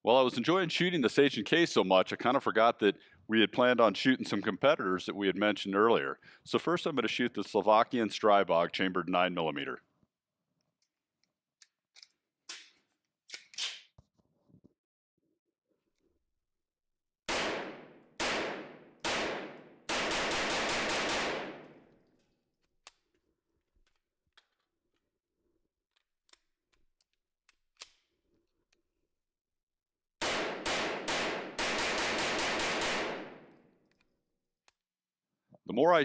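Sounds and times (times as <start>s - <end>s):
pistol shots with echo: 17.3s - 21.9s, 30.2s - 33.6s
small clicks: 22.0s - 25.1s, 25.8s - 28.9s.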